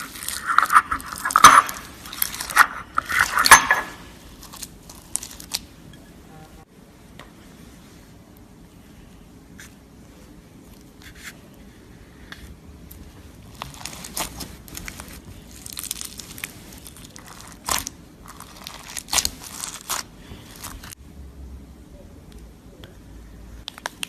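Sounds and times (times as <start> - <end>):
slime clicking and crackling: 0.0 - 3.4, 4.3 - 5.7, 13.4 - 21.0.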